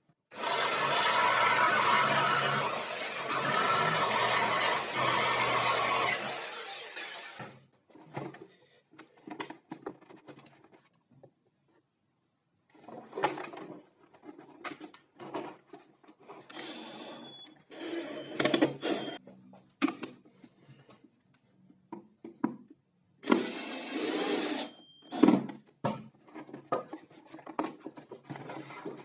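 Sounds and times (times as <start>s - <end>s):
vacuum motor running and winding down: 0.4s - 7.5s
knocks and clicks of tools handled: 19.6s - 23.4s.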